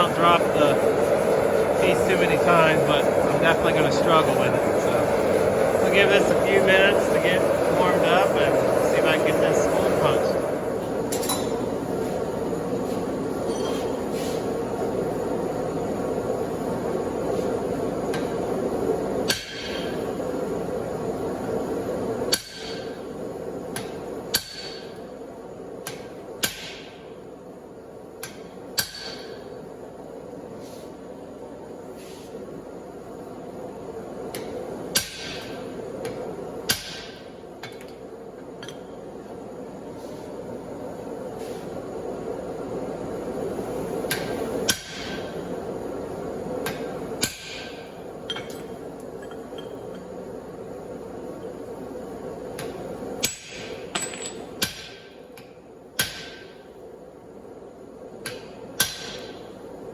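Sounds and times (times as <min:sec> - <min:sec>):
hammer striking hot steel: 0:00.0 - 0:11.7, 0:19.2 - 0:20.0, 0:22.3 - 0:23.0, 0:23.7 - 0:25.0, 0:25.8 - 0:27.1, 0:28.2 - 0:29.5, 0:34.3 - 0:38.0, 0:44.0 - 0:45.5, 0:46.6 - 0:50.0, 0:52.6 - 0:56.7, 0:58.2 - 0:59.5
forge burner roaring: 0:00.0 - 0:59.9.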